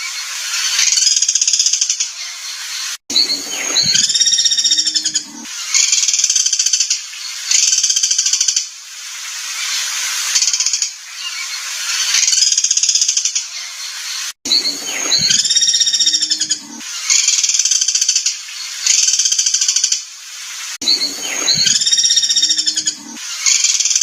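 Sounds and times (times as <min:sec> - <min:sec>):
harsh lower bird call: 0:02.2 - 0:05.8, 0:14.5 - 0:17.2, 0:20.8 - 0:23.8
buzzy high songbird trills: 0:03.1 - 0:05.5, 0:14.5 - 0:16.8, 0:20.8 - 0:23.2.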